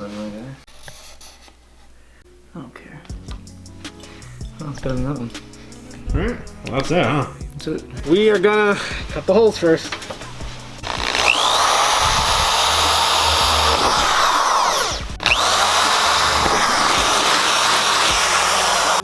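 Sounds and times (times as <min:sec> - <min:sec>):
electric drill boring aluminum: 0:09.8 - 0:19.0.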